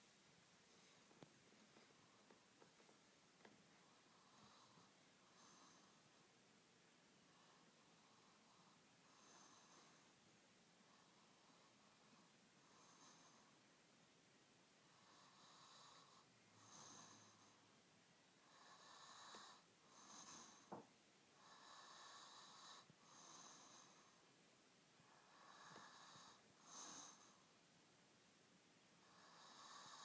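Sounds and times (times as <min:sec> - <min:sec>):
person snoring softly: 0:03.8 - 0:06.1, 0:07.3 - 0:10.2, 0:10.9 - 0:13.6, 0:14.9 - 0:17.6, 0:18.4 - 0:24.2, 0:25.0 - 0:27.5, 0:29.0 - 0:30.0.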